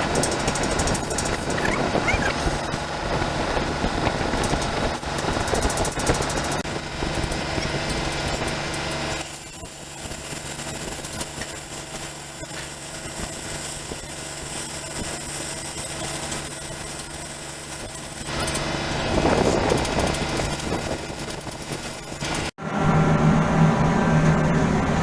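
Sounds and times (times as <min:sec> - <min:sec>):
engine humming: 0:21.1 - 0:25.0.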